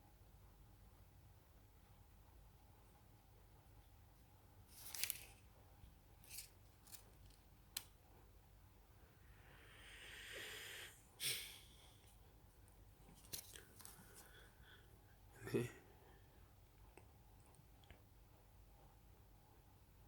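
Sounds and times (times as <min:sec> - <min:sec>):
paper rustle: 0:04.7 - 0:05.4, 0:06.2 - 0:07.4.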